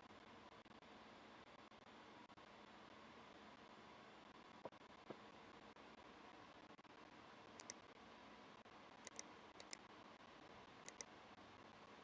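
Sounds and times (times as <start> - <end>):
faint sharp clicks in pairs: 7.6 - 7.8, 9.1 - 9.9, 10.9 - 11.1.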